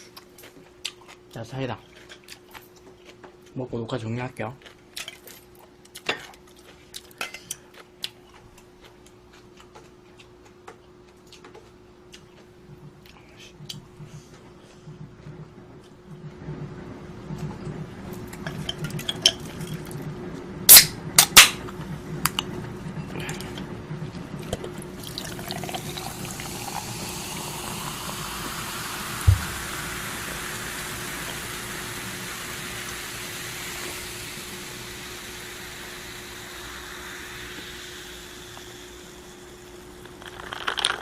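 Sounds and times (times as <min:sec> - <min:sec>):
soda fizzing hiss: 0:24.9 - 0:41.0
soda pouring into glass: 0:24.9 - 0:41.0
low thump: 0:29.2 - 0:29.7.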